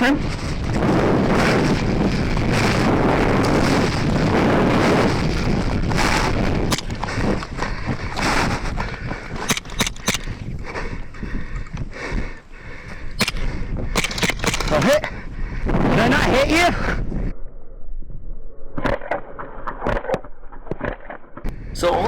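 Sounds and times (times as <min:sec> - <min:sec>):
wind buffeting microphone: 0:00.0 - 0:19.0, 0:21.4 - 0:22.0
airsoft shots: 0:09.4 - 0:10.4, 0:13.2 - 0:15.0.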